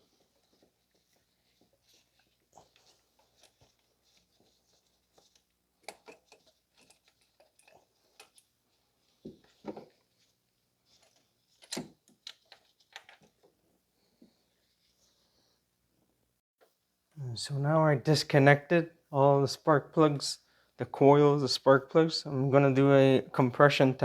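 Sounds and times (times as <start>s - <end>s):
tools and engine parts clicking: 5.2s - 8.5s.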